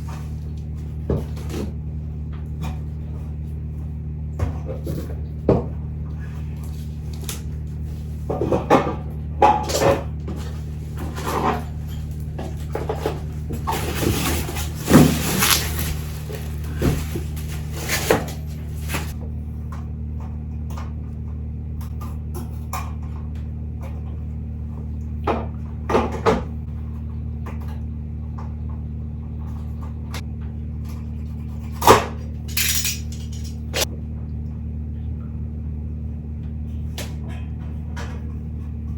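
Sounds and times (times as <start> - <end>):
steady low hum: 0.0 - 38.9
rustling: 12.1 - 19.2.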